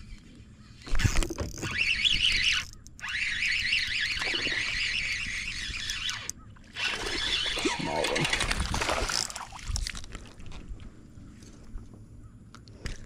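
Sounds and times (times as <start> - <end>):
fishing reel gear whine: 0.8 - 9.6.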